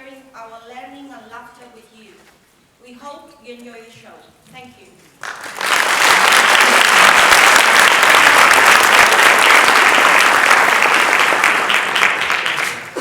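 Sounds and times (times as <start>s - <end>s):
audience applauding: 5.2s - 13.0s.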